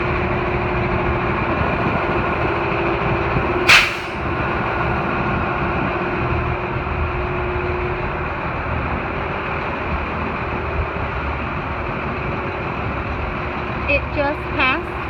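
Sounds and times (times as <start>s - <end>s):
diesel engine idling: 0.0s - 15.0s
loud hiss burst: 3.7s - 4.2s.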